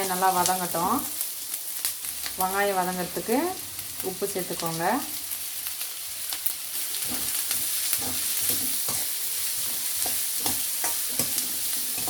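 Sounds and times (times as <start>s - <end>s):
onions sizzling in oil: 0.0s - 12.0s
spatula scraping pan: 6.8s - 12.0s.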